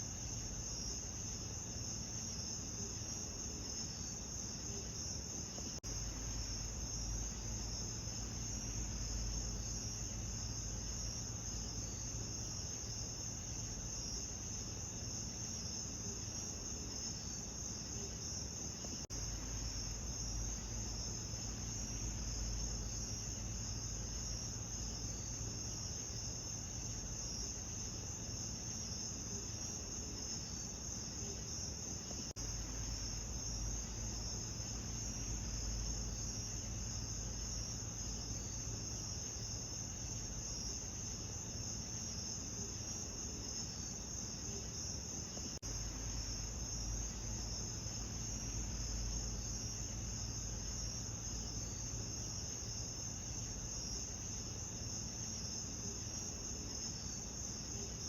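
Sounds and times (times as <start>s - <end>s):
night insects chorus: 0.0s - 58.0s
low steady rumble: 5.8s - 15.0s, 19.0s - 28.3s, 32.4s - 41.4s, 45.4s - 54.6s.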